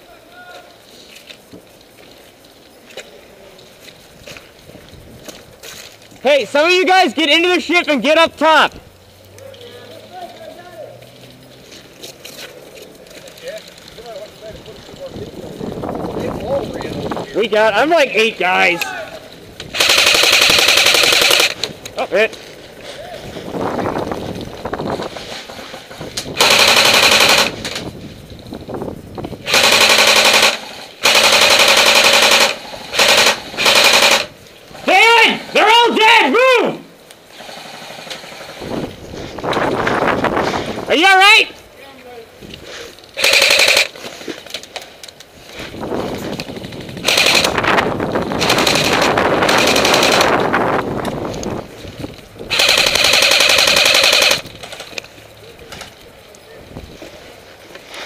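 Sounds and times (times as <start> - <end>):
airsoft gun firing bursts: 19.7 - 21.7, 26.4 - 27.8, 29.4 - 34.9, 43.2 - 44.0, 46.6 - 47.7, 48.3 - 50.5, 52.5 - 54.9.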